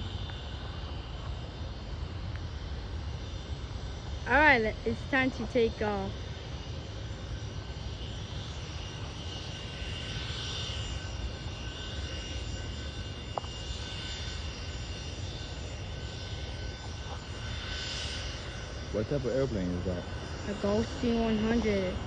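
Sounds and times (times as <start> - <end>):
jet engines running: 0.0 - 22.0.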